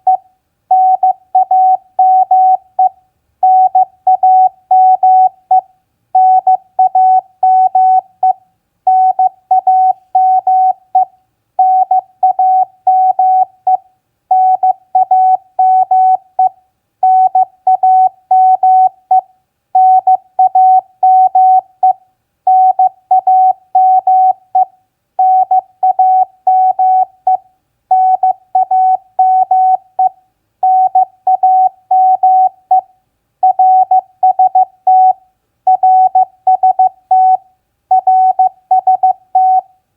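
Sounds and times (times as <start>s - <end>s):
morse code beeps: 25.2s - 32.8s, 33.4s - 39.6s.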